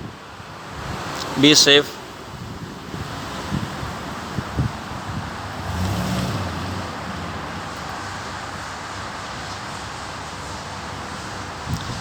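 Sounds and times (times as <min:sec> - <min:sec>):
road traffic: 0:00.0 - 0:12.0
vehicle passing: 0:01.9 - 0:09.4
low wind thumps: 0:02.1 - 0:08.8
wind on microphone: 0:02.2 - 0:08.1, 0:11.2 - 0:12.0.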